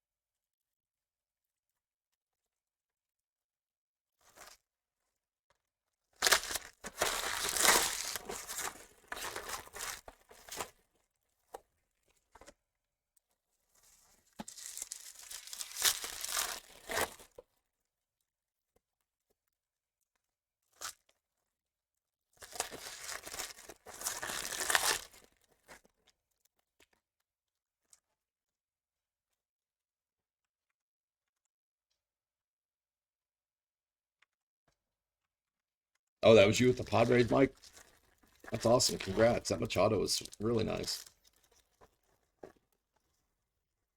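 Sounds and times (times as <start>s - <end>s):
packaging tearing and crinkling: 6.2s - 10.7s, 14.4s - 17.4s, 22.4s - 25.4s, 36.5s - 41.6s.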